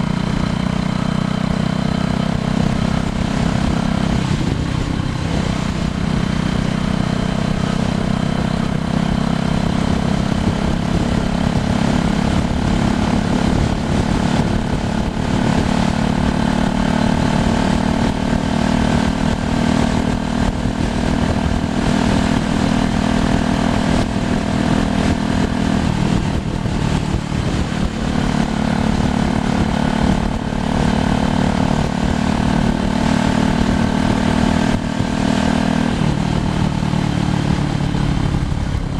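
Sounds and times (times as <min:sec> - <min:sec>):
bicycle tyres humming on road: 0:00.0 - 0:38.9
wind on microphone: 0:02.3 - 0:38.9.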